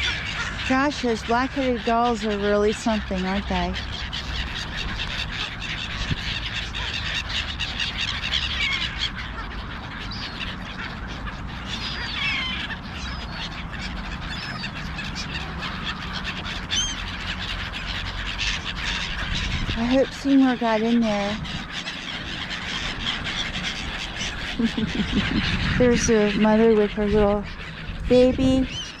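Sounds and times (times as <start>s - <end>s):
flock of gulls calling: 0.0s - 29.0s.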